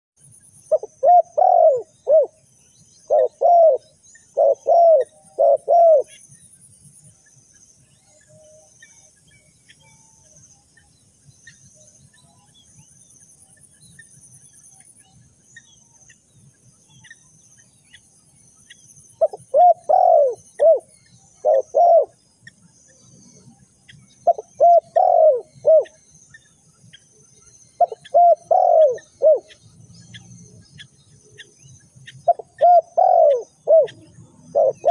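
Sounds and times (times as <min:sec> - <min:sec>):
dove cooing: 0:00.7 - 0:02.4, 0:03.1 - 0:06.2, 0:19.2 - 0:22.2, 0:24.2 - 0:26.0, 0:27.8 - 0:29.6, 0:32.2 - 0:34.9.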